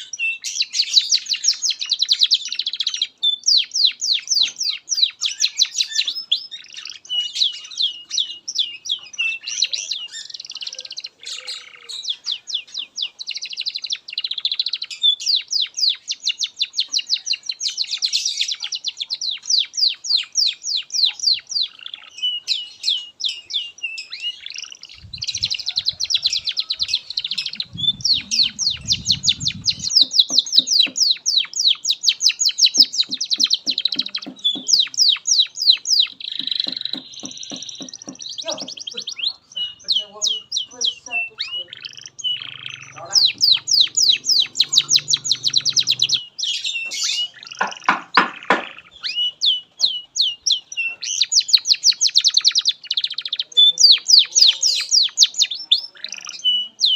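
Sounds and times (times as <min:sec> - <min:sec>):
canary singing trills: 0:00.0 - 0:56.9
low rumble: 0:27.3 - 0:30.0.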